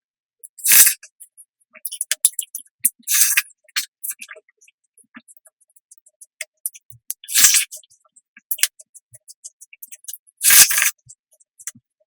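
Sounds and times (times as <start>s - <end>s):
wet mouth clicks: 6.4s - 7.8s, 8.5s - 11.0s.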